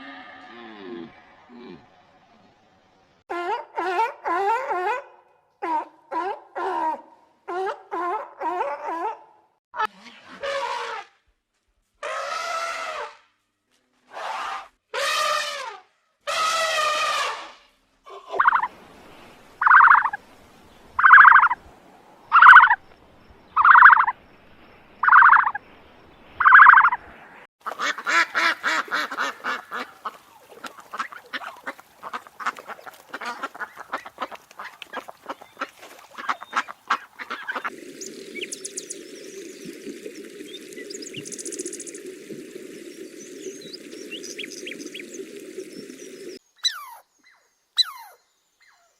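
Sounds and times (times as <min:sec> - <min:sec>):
rapid dense calls and clicks: 0:19.6 - 0:20.2, 0:21.0 - 0:21.6, 0:25.0 - 0:25.6, 0:27.6 - 0:39.3
goose honking: 0:27.6 - 0:37.7.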